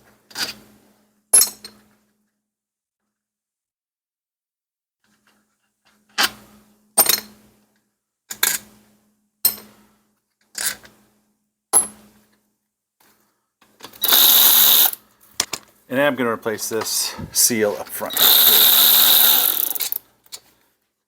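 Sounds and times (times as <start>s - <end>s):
metal parts clinking: 18.1s - 20.0s.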